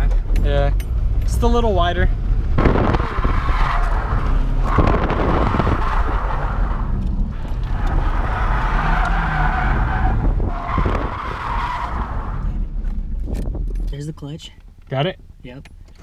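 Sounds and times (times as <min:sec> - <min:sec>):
car engine revving: 0:00.0 - 0:13.8
tyres skidding on pavement: 0:02.4 - 0:13.1.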